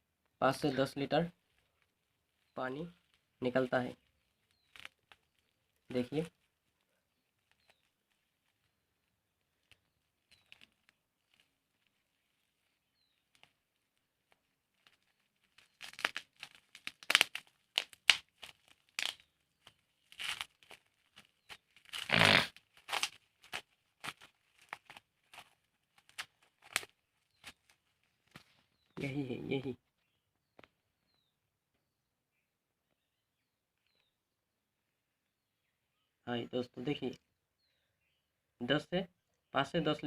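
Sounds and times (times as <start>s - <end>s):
packaging crinkling and tearing: 4.0s - 8.8s, 9.4s - 28.7s.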